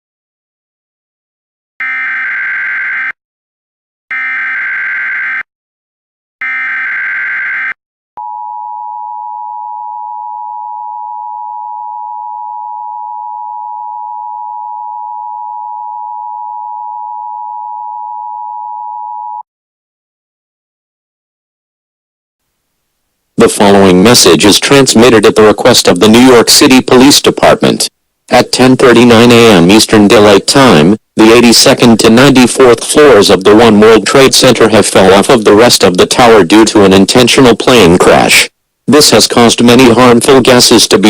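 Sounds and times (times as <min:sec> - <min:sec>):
steady attention tone: 0:06.4 - 0:19.4.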